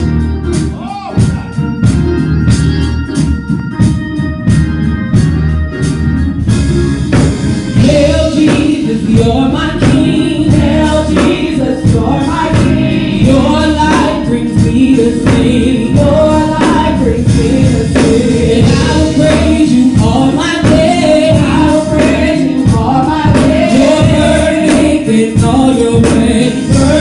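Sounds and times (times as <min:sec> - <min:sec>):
organ chords: 0:00.0 - 0:27.0
steady beat: 0:00.0 - 0:27.0
people singing: 0:07.8 - 0:27.0.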